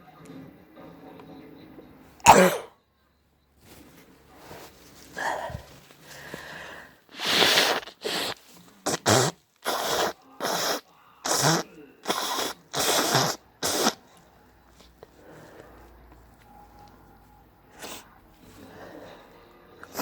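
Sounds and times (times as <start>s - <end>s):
soft breaths: 3.6s - 9.0s, 9.6s - 20.0s
person blowing air through nose: 6.6s - 14.1s, 17.8s - 18.1s.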